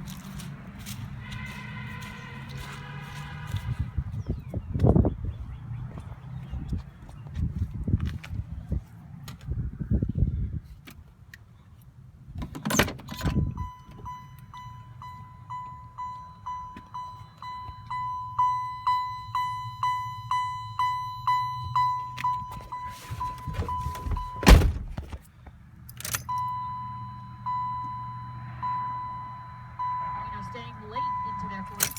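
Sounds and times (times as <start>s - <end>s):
car warning chime: 13.1s - 24.7s, 26.0s - 31.9s
thunk: 23.6s - 25.2s.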